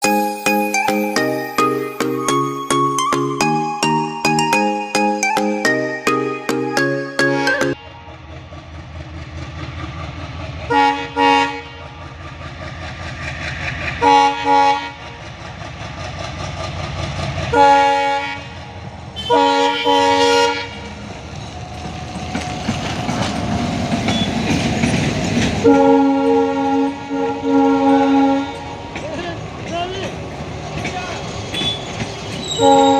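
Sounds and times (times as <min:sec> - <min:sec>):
diesel locomotive engine rumbling: 0:00.0 - 0:32.9
wheels clattering on rails: 0:07.8 - 0:32.9
train horn blasts: 0:10.7 - 0:11.8, 0:14.0 - 0:15.1, 0:17.5 - 0:18.6, 0:19.2 - 0:20.9, 0:25.6 - 0:28.8, 0:32.5 - 0:32.9.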